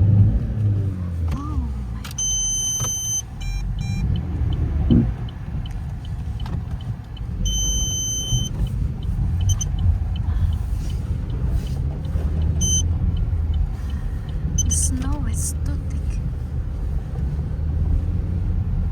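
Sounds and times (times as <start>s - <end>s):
car engine rumbling: 0.0s - 18.9s
light regular ticking: 1.3s - 17.3s
high electronic beep: 2.2s - 4.2s, 7.4s - 8.5s, 12.6s - 12.9s, 14.6s - 14.9s.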